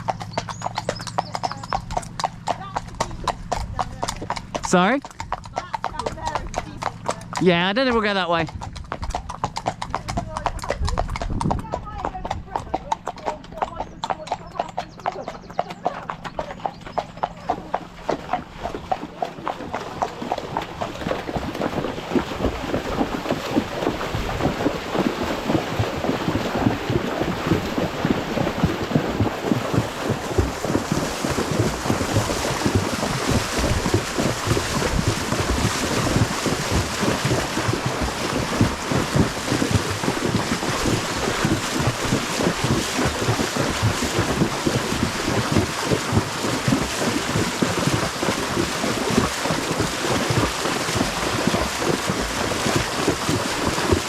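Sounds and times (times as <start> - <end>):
horse splashing through water: 0.0 - 54.0
rushing water: 17.0 - 54.0.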